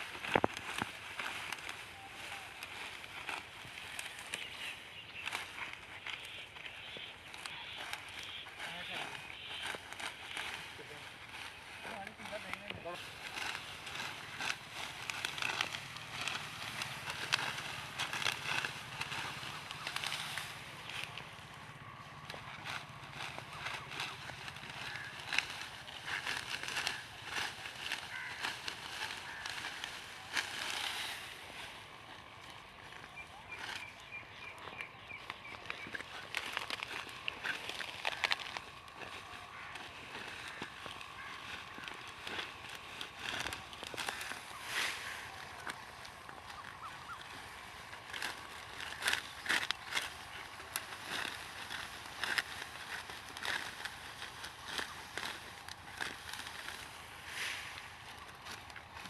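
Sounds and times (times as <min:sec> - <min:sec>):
sickle cutting dry wheat stalks: 0:00.0 - 0:59.0
straw snapping and rustling: 0:00.0 - 0:59.0.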